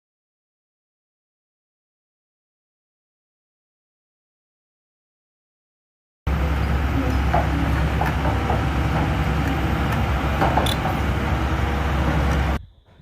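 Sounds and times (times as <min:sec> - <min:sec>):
pressure washer engine hum: 0:06.3 - 0:12.6.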